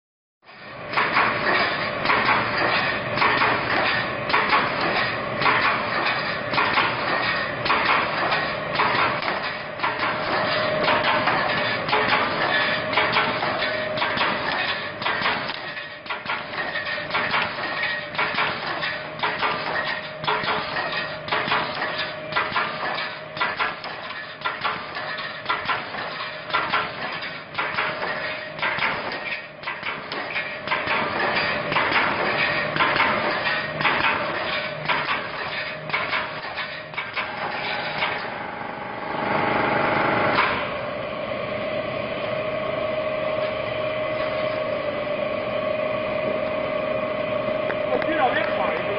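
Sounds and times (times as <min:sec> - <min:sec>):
welding machine clattering: 0:00.5 - 0:38.4, 0:39.9 - 0:40.8
machine stroke thuds: 0:00.9 - 0:38.4.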